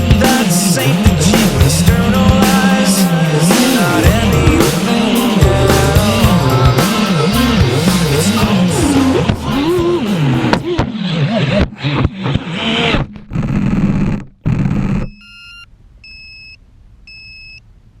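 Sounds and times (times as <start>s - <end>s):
rock music: 0.0s - 10.8s
electronic two-tone beeps: 15.0s - 17.6s.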